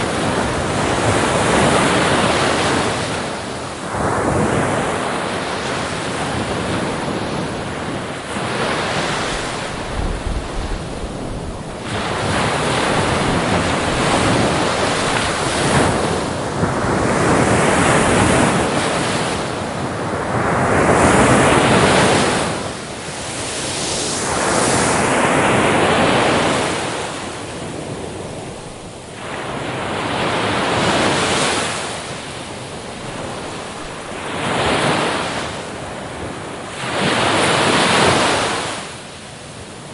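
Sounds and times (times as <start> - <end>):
waves breaking on shore: 0.0 - 39.9
wind noise on microphone: 0.0 - 39.9.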